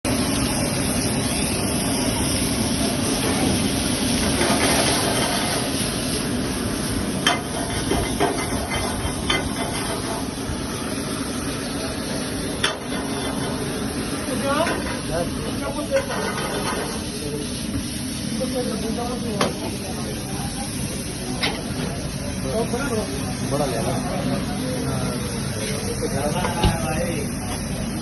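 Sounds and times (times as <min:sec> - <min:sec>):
food sizzling in a pan: 0:00.1 - 0:28.0
utensil clinking on a pan: 0:15.9 - 0:16.9.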